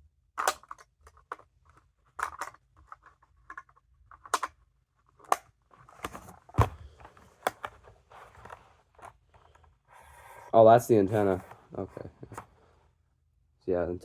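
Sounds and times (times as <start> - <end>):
plastic clicks: 0.4 - 9.7
light rustling: 5.7 - 12.6.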